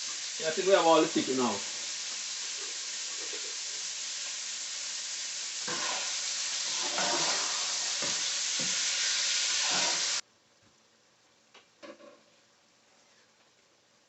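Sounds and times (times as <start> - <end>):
chicken sizzling in oil: 0.0 - 10.2.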